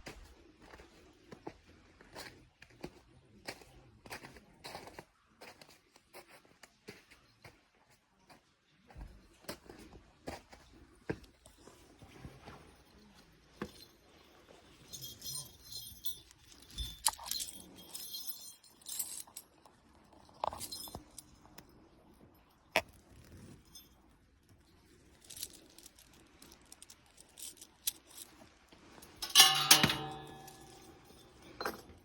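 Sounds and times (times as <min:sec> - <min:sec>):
metallic jingling and clinking: 0:12.5 - 0:32.0
ringing metallic strike: 0:29.2 - 0:31.3.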